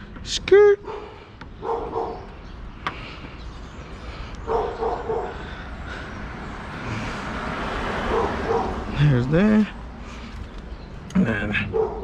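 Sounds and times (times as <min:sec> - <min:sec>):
dog barking: 0:00.8 - 0:02.3, 0:04.5 - 0:05.5, 0:08.0 - 0:08.9, 0:11.6 - 0:12.0.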